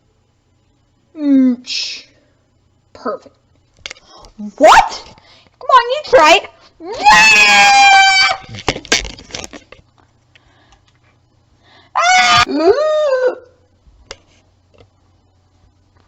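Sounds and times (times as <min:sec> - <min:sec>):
child crying or screaming: 0:06.9 - 0:08.5, 0:12.0 - 0:13.5
knocks and rustles: 0:08.5 - 0:09.9.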